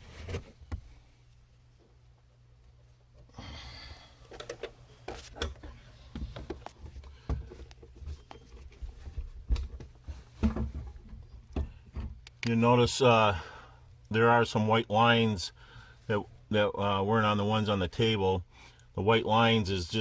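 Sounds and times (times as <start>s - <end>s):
clicks and knocks of fuel pump: 4.3s - 12.5s.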